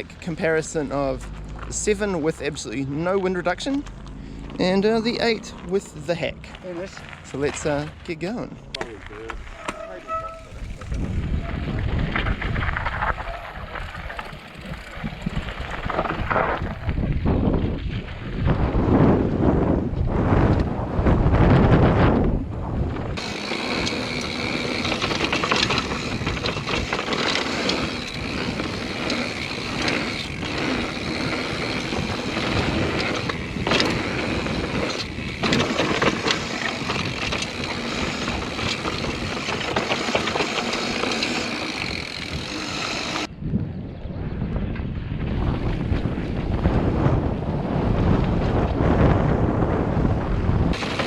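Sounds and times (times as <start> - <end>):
bike rattles and knocks: 0.0 - 18.0, 22.9 - 43.3, 50.7 - 51.0
tyres rolling over dirt and gravel: 0.0 - 18.7, 23.0 - 43.3, 50.7 - 51.0
wind buffeting microphone: 0.0 - 51.0
steady high whir: 23.1 - 43.3, 50.7 - 51.0.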